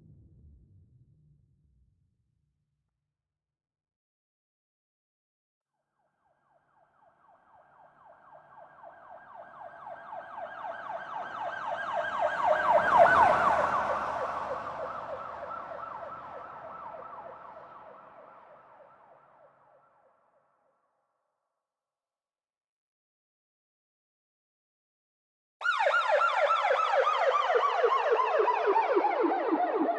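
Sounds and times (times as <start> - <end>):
police siren yelping: 7.8 - 19.0, 25.6 - 29.9.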